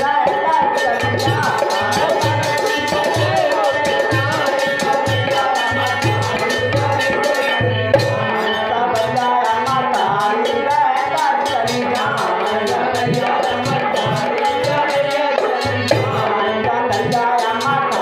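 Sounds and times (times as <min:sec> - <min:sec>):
fast drum rhythm: 0:00.0 - 0:18.0.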